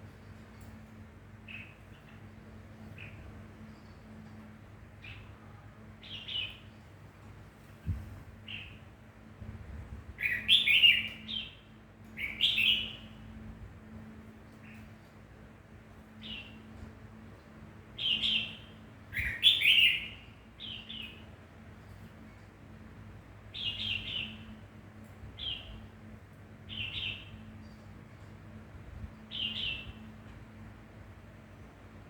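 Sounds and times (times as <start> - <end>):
songbird chirping: 10.2 - 13.3, 18.0 - 22.1, 23.4 - 26.0.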